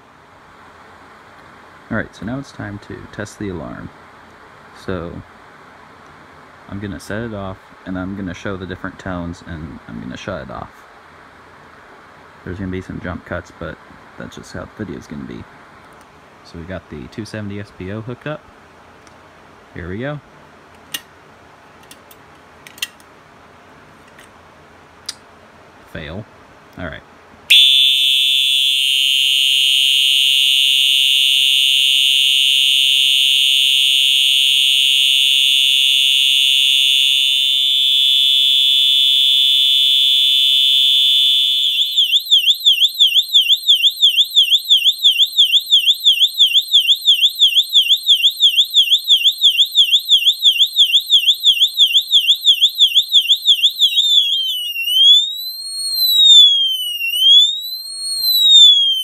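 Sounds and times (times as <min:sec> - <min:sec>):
electronic fire alarm horn: 0:27.5 - 0:59.0.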